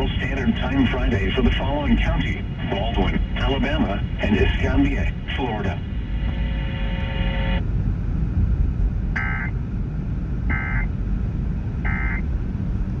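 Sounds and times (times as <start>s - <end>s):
radio receiver noise: 0.0s - 7.6s, 9.2s - 9.5s, 10.5s - 10.9s, 11.9s - 12.2s
steady tone: 0.0s - 8.0s, 9.1s - 9.5s.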